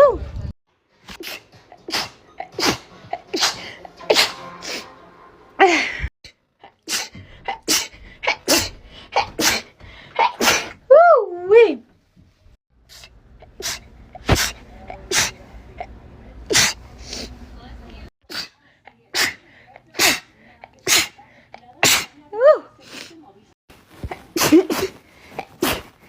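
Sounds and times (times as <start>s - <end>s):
woman sneezing: 1.2s - 4.8s, 6.9s - 10.8s, 12.9s - 15.4s, 16.5s - 17.3s, 18.2s - 21.2s, 21.8s - 23.2s, 24.0s - 25.9s.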